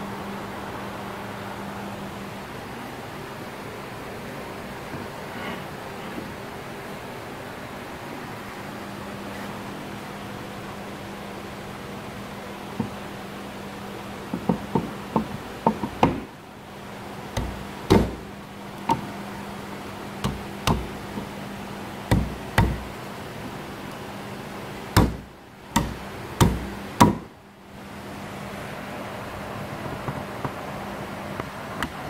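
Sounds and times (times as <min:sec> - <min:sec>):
steady low hum: 0:00.0 - 0:32.0
sharp wooden knocks: 0:14.3 - 0:16.3, 0:17.4 - 0:18.3, 0:20.2 - 0:21.3, 0:22.1 - 0:22.9, 0:25.0 - 0:27.3.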